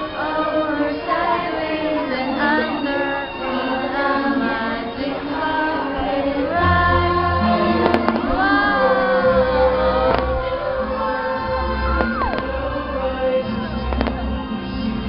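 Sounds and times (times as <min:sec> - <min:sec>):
choir singing: 0:00.0 - 0:15.0
orchestral music: 0:00.0 - 0:15.0.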